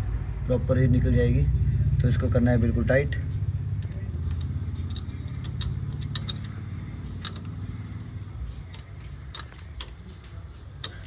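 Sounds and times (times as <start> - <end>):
low steady hum: 0.0 - 11.0
spanner clicking on metal: 3.7 - 10.2, 10.8 - 11.0.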